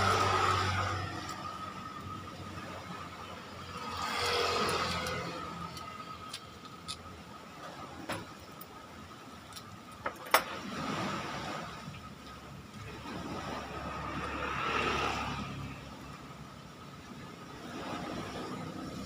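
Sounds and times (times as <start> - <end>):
vehicle passing by: 0.0 - 6.4, 12.8 - 16.5, 17.2 - 19.0.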